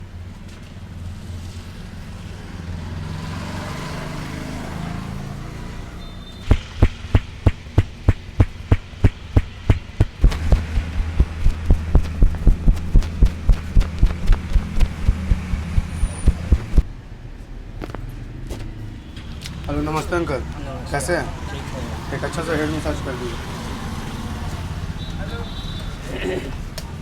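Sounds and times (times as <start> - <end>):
hands slapping on head: 6.5 - 16.9
low hum: 6.5 - 17.0.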